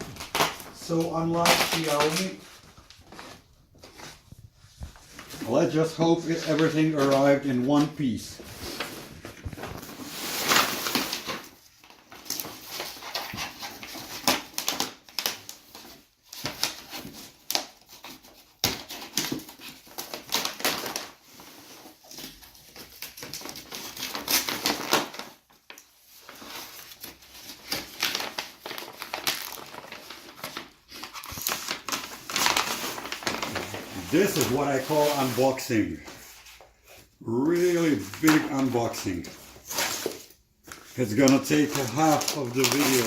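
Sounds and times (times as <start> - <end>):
paper wrapping rustling and tearing: 0.0 - 43.0
cardboard scraping: 26.2 - 43.0.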